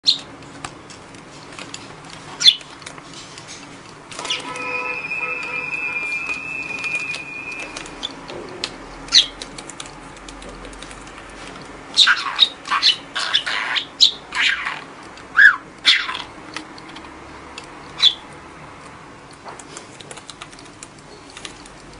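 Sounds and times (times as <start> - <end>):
small clicks and scratches: 0.1 - 4.7, 6.9 - 11.8, 18.8 - 21.9
budgerigar chirping: 4.2 - 8.2, 9.1 - 9.4, 11.9 - 16.3, 18.0 - 18.2
steady high tone: 4.2 - 8.2.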